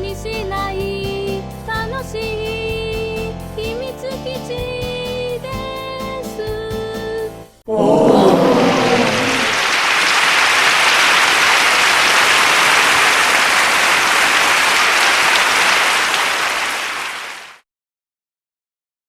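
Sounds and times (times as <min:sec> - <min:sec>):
crowd applause: 0:07.7 - 0:17.6
crowd cheering: 0:07.7 - 0:17.6.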